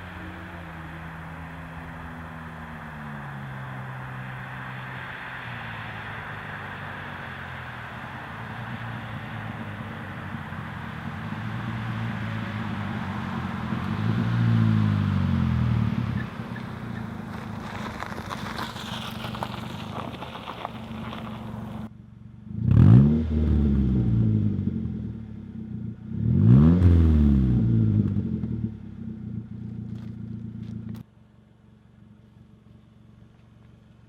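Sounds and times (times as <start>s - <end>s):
exhaust crackling pops: 16.2s - 21.9s
car engine revving: 22.5s - 31.0s.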